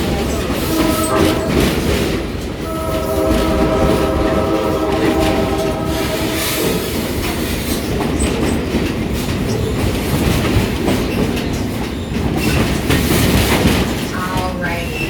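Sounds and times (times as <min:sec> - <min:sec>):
train wheels clickety-clack: 0:00.0 - 0:15.0
train horn chord: 0:00.1 - 0:08.4.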